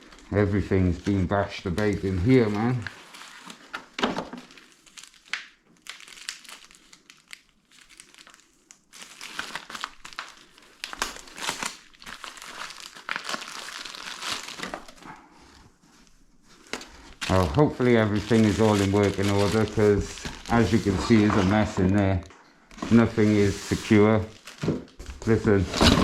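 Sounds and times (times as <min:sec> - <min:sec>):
packaging crinkling: 0:00.0 - 0:26.0
hands rummaging through box: 0:16.5 - 0:26.0.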